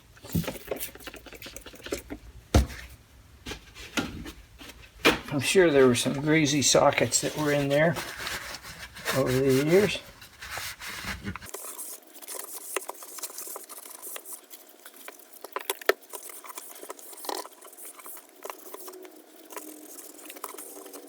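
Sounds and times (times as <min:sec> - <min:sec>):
scrubbing inside metal toolbox: 0:05.3 - 0:11.5.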